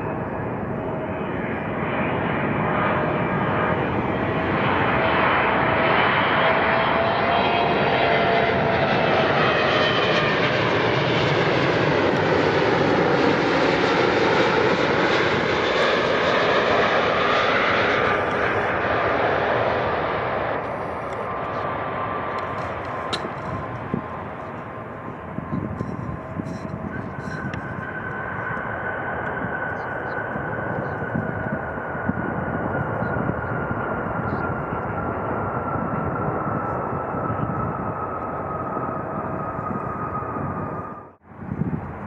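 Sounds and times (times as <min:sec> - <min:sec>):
jet engines passing close: 0:00.0 - 0:42.0.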